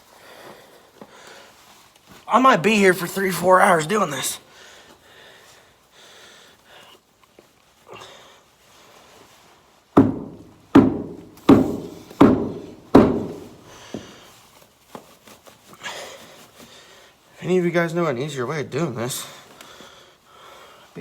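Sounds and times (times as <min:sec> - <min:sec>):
heavy blows on metal hub: 0:10.0 - 0:13.7.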